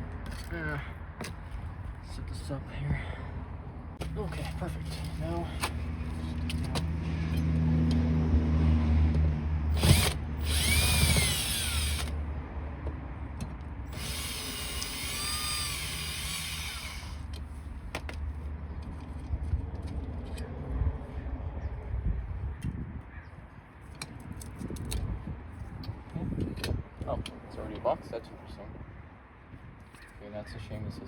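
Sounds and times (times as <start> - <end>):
cordless drill whining: 9.7 - 12.2, 13.9 - 17.3.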